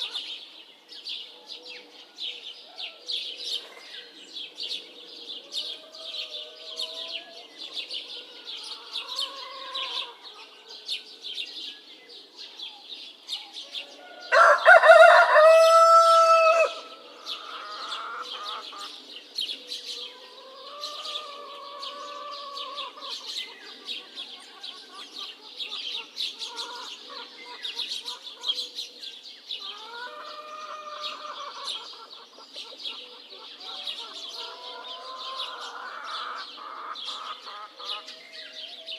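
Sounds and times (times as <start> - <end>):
faint crows of other roosters: 0.0 - 0.6, 1.4 - 28.8, 29.4 - 38.9
small birds chirping: 0.0 - 38.9
rooster crowing loudly: 14.1 - 16.9.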